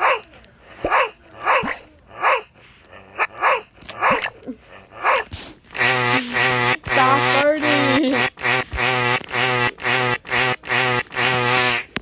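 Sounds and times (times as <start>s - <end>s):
dog barking: 0.0s - 5.4s.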